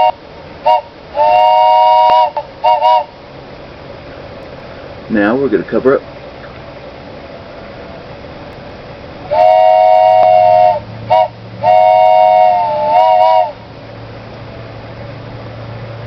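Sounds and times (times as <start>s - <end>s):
wooden train whistle blasts: 0.0s - 3.2s, 9.3s - 13.6s.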